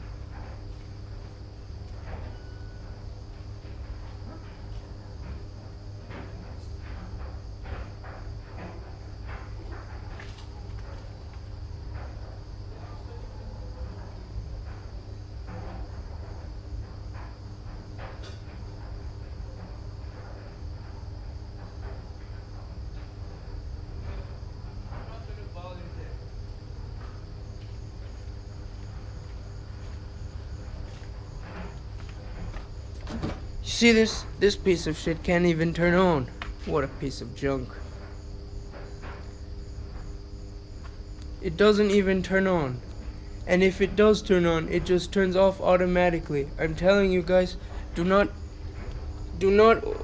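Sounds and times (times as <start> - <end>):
crickets chirping: 0.0 - 50.0
high insect drone: 0.0 - 50.0
footsteps: 26.6 - 45.2.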